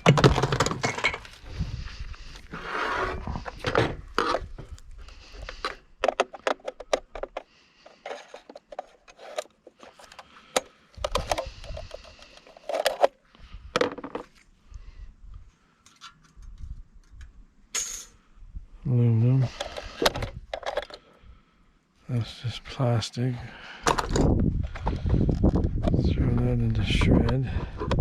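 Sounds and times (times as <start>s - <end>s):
metal parts and tools clinking: 0.0s - 1.4s, 17.7s - 18.2s.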